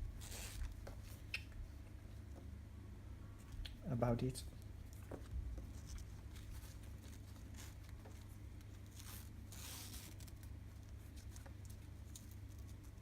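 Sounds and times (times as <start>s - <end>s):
low steady hum: 0.0s - 13.0s
strap webbing scraping through buckle: 0.2s - 1.0s, 5.2s - 10.5s.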